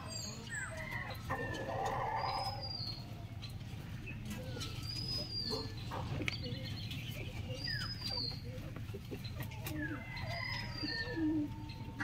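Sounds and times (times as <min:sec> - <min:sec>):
chickens chirping and clucking: 0:00.0 - 0:12.0.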